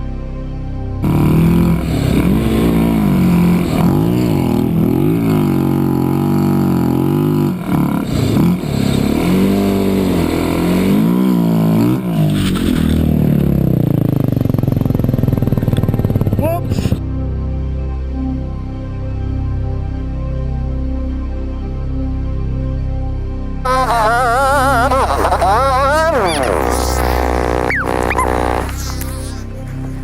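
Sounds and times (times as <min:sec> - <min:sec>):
vehicle engine revving: 0:01.0 - 0:17.0, 0:23.7 - 0:30.0.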